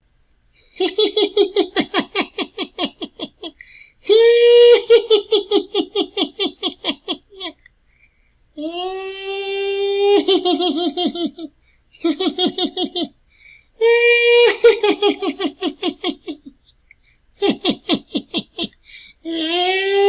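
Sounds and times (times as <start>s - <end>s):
high-pitched cackling laugh: 0.7s - 3.6s, 4.2s - 7.6s, 10.0s - 13.1s, 14.4s - 16.6s, 17.4s - 18.8s.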